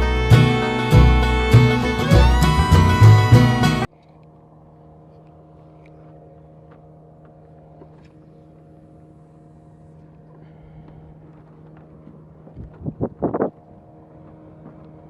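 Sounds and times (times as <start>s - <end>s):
music: 0.0s - 3.9s
faint engine hum: 0.0s - 15.0s.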